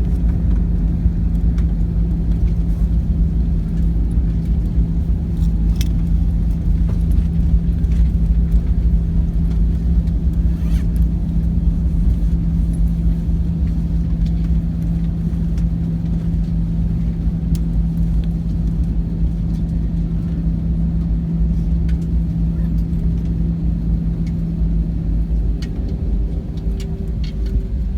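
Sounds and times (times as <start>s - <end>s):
airliner cabin engine drone: 0.0s - 27.9s.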